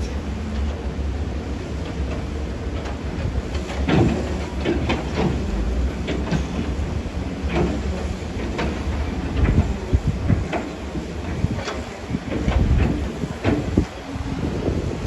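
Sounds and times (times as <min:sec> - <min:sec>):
diesel engine rumbling: 0:00.0 - 0:15.0
metallic clanks and knocks: 0:03.6 - 0:14.0.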